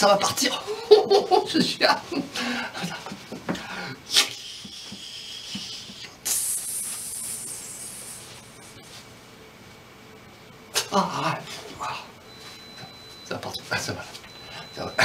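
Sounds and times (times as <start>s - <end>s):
mouth-made fizzing hiss: 4.2s - 8.5s
mouth-made scratch: 6.3s - 9.0s.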